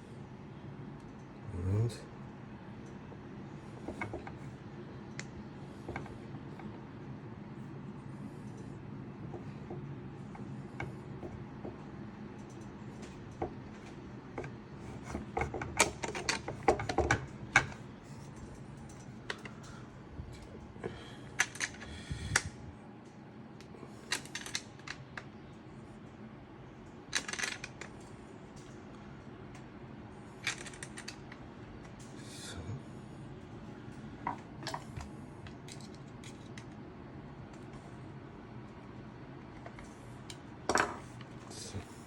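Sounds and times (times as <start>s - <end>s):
low steady hum: 0.0s - 42.0s.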